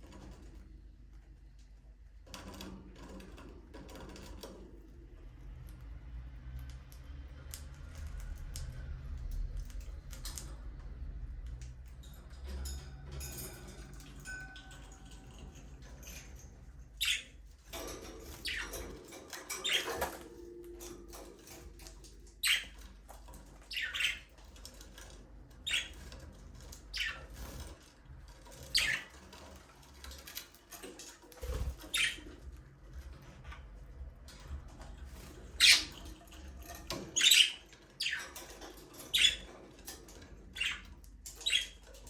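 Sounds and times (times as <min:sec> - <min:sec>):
budgerigars chirping: 0:17.0 - 0:17.4, 0:19.6 - 0:20.1, 0:22.4 - 0:22.8, 0:23.7 - 0:24.3, 0:26.9 - 0:27.3, 0:28.7 - 0:29.1, 0:31.9 - 0:32.2, 0:35.6 - 0:36.0, 0:37.1 - 0:38.4, 0:39.1 - 0:39.5.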